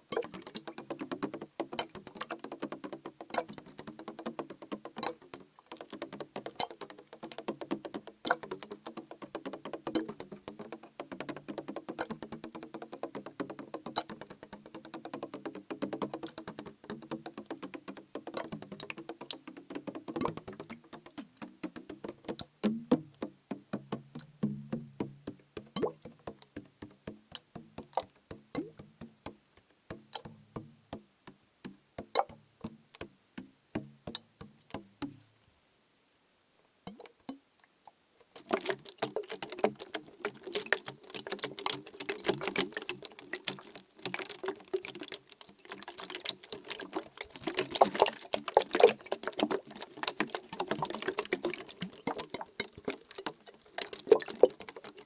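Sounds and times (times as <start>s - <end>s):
tapping on plastic bottle: 13.9s - 35.2s
liquid sloshing in bottle: 38.4s - 55.0s.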